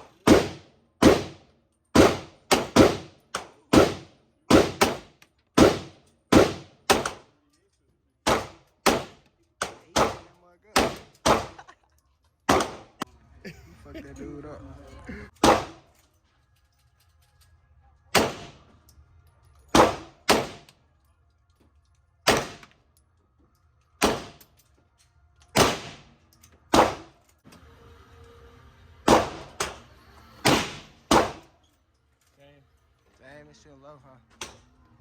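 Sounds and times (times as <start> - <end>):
gunshots with ringing tail: 0.0 - 1.4, 2.0 - 7.2, 8.3 - 11.6, 15.4 - 15.9, 18.1 - 18.7, 19.7 - 20.7, 22.2 - 22.7, 24.0 - 24.4, 25.6 - 26.1, 29.0 - 29.8, 30.4 - 31.4.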